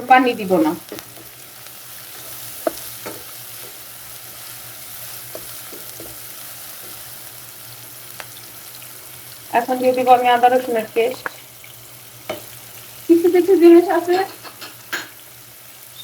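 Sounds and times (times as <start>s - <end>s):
onions sizzling in a frying pan: 0.0s - 16.0s.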